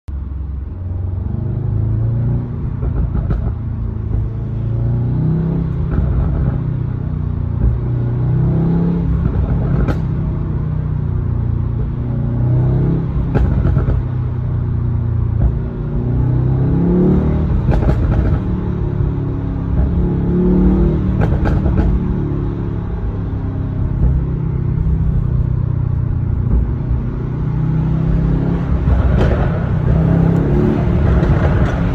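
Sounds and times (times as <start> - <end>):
car engine revving: 0.4 - 31.9
exhaust pops and crackles: 2.6 - 4.7, 5.6 - 8.1, 9.0 - 10.5, 13.0 - 16.2, 17.2 - 31.9.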